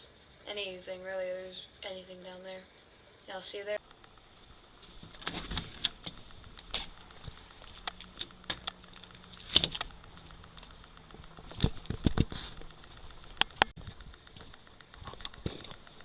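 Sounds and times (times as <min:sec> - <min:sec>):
irregular clicks and knocks: 0:03.8 - 0:16.0.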